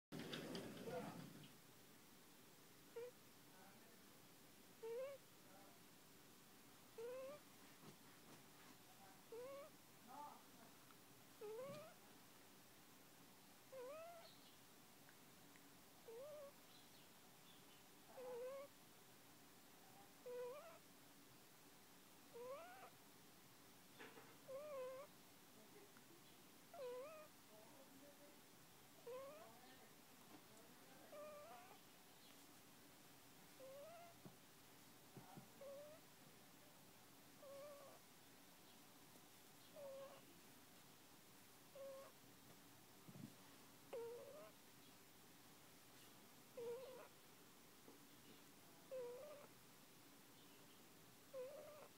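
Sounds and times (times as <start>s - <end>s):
puppy snoring squeakily: 4.8s - 5.2s, 7.0s - 7.4s, 9.3s - 9.7s, 11.4s - 12.0s, 13.7s - 14.3s, 16.0s - 16.6s, 18.1s - 18.7s, 20.2s - 20.8s, 22.3s - 22.9s, 24.5s - 25.1s, 26.7s - 27.3s, 29.0s - 29.5s, 31.1s - 31.8s, 33.6s - 34.2s, 35.6s - 36.0s, 37.4s - 38.0s, 39.8s - 40.3s, 41.7s - 42.2s, 43.9s - 44.6s, 46.6s - 47.1s, 48.9s - 49.5s, 51.3s - 51.9s.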